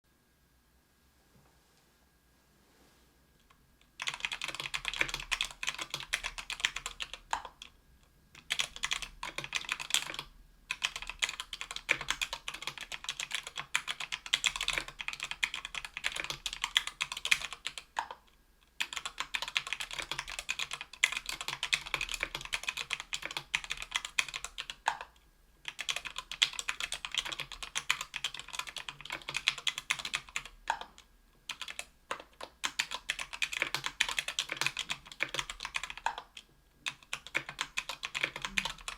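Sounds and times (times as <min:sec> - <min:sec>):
mechanical keyboard typing: 0:04.0 - 0:07.8, 0:08.4 - 0:18.2, 0:18.8 - 0:38.9.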